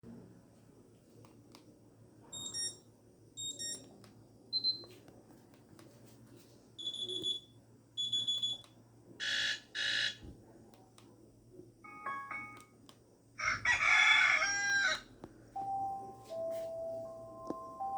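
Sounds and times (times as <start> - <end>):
harsh buzzer bursts: 9.2 - 10.2.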